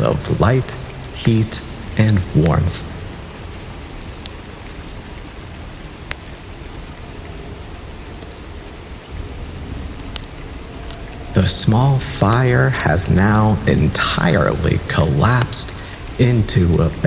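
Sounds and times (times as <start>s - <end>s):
steady rainfall: 0.0s - 17.0s.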